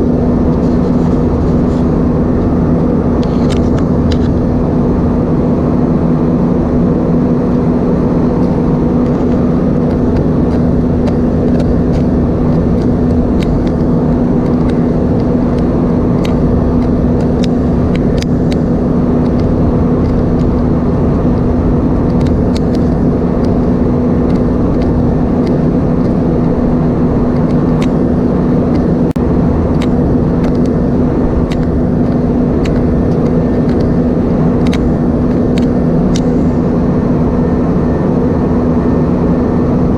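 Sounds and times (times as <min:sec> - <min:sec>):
airplane cabin drone: 0:00.0 - 0:39.9.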